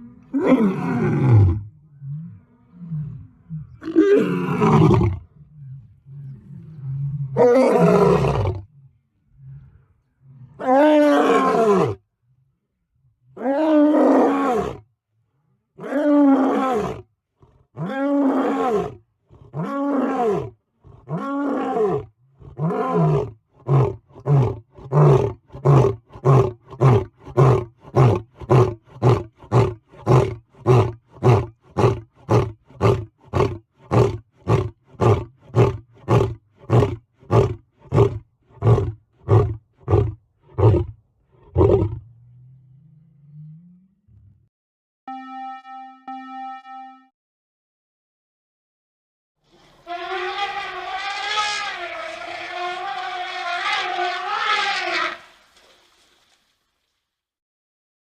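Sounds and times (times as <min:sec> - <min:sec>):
large animal roaring: 0:00.0 - 0:12.0, 0:17.8 - 0:44.5.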